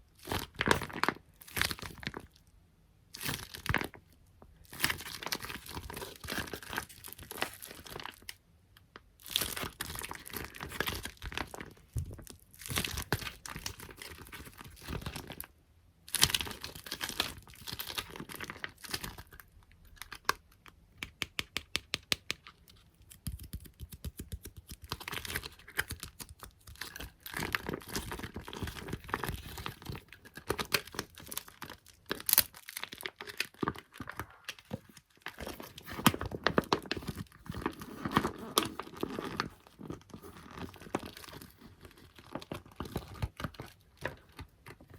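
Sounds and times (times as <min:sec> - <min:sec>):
tapping on squishy toys: 0:20.9 - 0:25.0
sticky peeling and crinkling: 0:22.3 - 0:44.9.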